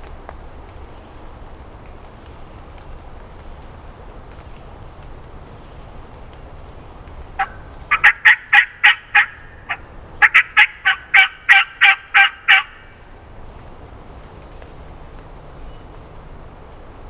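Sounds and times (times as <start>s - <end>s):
turkey call yelping: 7.4s - 13.0s.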